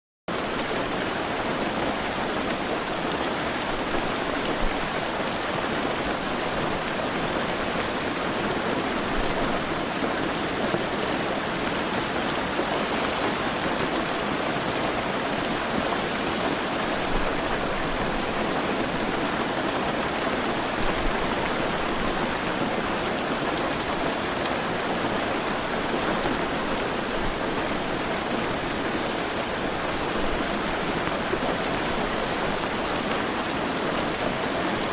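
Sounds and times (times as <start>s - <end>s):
heavy rain falling: 0.3s - 34.9s.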